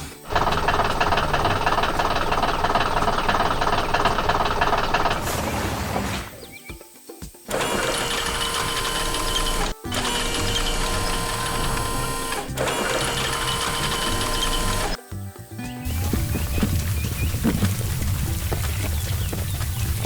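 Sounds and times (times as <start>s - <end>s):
rapid mechanical rattle: 0.0s - 5.3s, 7.5s - 15.0s.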